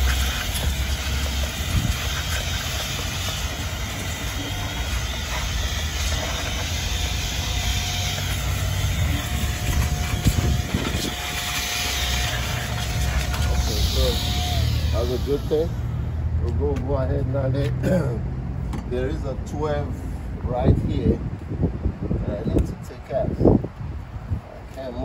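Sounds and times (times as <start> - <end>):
electric blower rushing air: 0.0 - 16.6
faint steady whine: 0.0 - 16.7.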